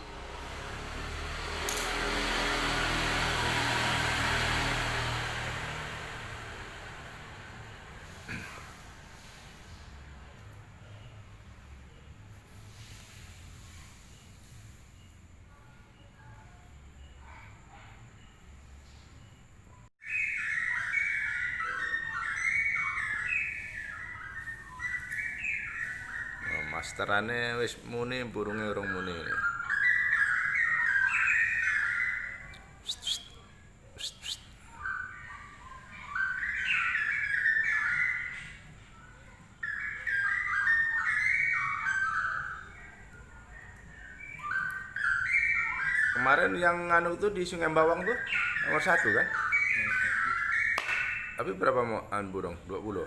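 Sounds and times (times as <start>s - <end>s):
bird singing fluty whistled notes: 20.0s - 53.0s.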